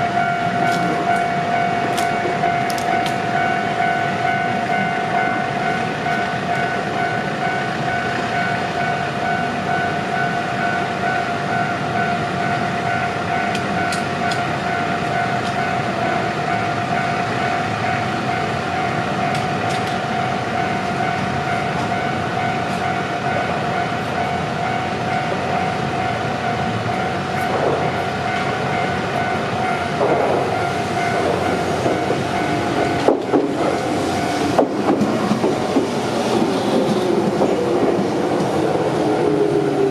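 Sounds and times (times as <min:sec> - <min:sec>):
level-crossing warning bell: 0:00.0 - 0:39.9
train wheels knocking on rail joints: 0:25.2 - 0:39.6.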